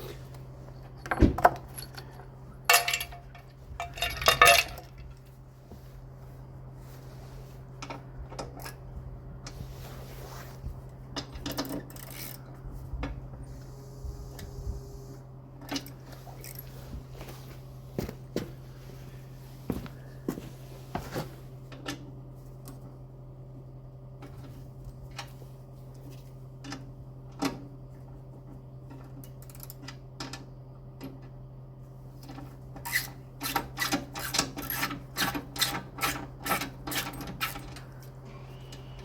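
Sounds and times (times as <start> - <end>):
steady low hum: 0.0 - 33.3, 36.2 - 39.0
metal tools clanking: 0.9 - 5.0.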